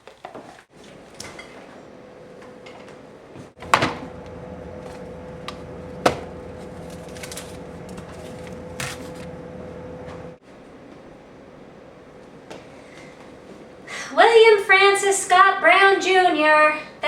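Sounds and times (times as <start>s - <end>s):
refrigerator hum: 0.8s - 13.0s.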